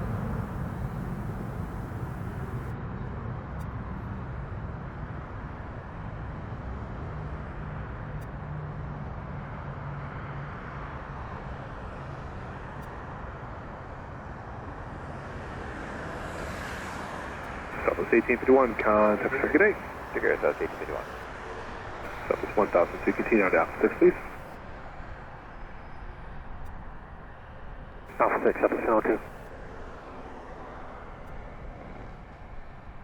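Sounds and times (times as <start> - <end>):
distant jet engine rumble: 0.0 - 2.7, 17.7 - 21.2, 22.0 - 24.6, 28.1 - 29.4.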